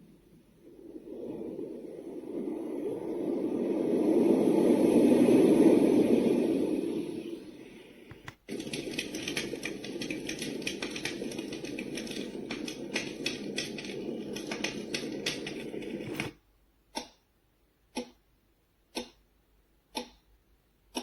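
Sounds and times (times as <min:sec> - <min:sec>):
crackling noise track: 0:00.0 - 0:16.4
clock ticking: 0:08.5 - 0:16.2, 0:16.9 - 0:17.3, 0:17.9 - 0:21.0.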